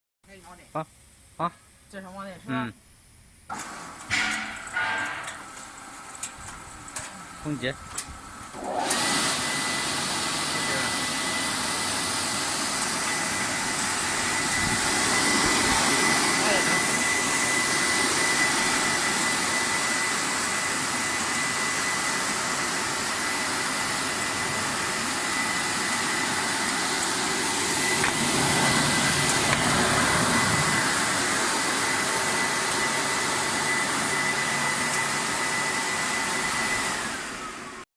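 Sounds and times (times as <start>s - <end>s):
deep-frying machine hissing: 8.4s - 37.8s
thin high whine: 13.0s - 21.9s.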